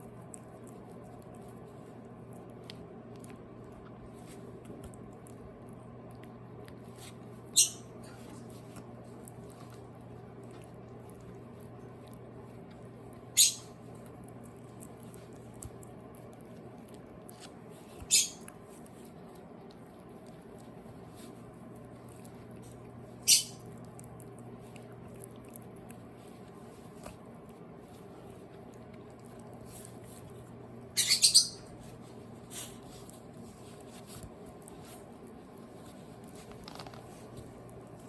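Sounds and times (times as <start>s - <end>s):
steady low hum: 0.0s - 38.0s
puppy licking clicks: 8.7s - 22.9s.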